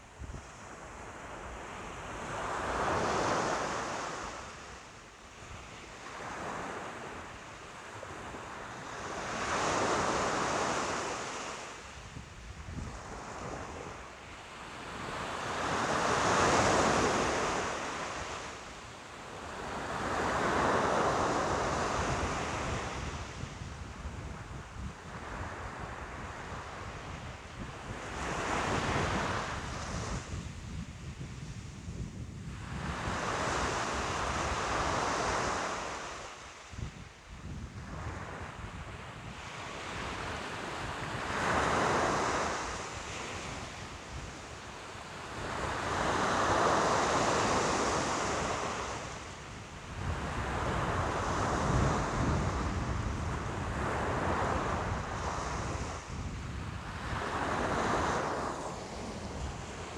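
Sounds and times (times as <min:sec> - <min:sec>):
wind rumble on microphone: 0:00.0 - 0:04.8, 0:05.4 - 0:18.6, 0:19.2 - 0:59.9
ocean waves breaking on shore: 0:00.4 - 0:30.5, 0:32.5 - 0:36.9, 0:37.8 - 0:59.9.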